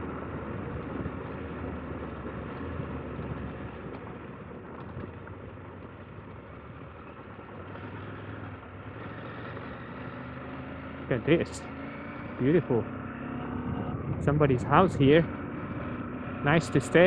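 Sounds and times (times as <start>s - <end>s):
tyres on gravel: 0.0s - 9.9s
motorcycle engine running: 0.0s - 17.0s
wind: 0.0s - 17.0s.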